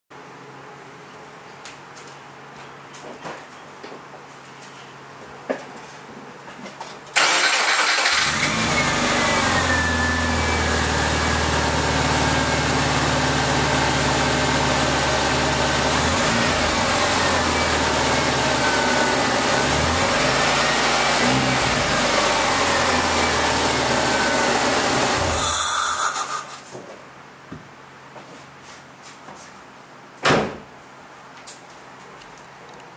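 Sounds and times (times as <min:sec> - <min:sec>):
car engine starting and idling: 0:07.1 - 0:26.4.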